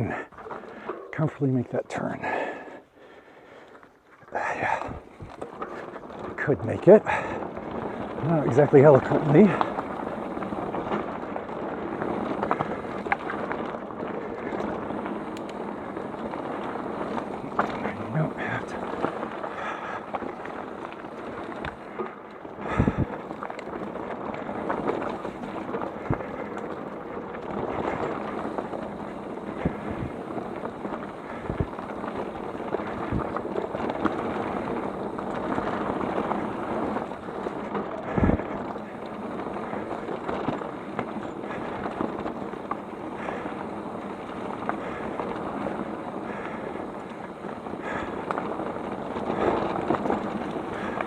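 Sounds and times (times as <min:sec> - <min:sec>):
bike tyre and drivetrain rattle: 0:00.0 - 0:51.0
wind on microphone: 0:22.6 - 0:23.2, 0:27.5 - 0:30.4, 0:31.1 - 0:37.2, 0:38.0 - 0:40.1.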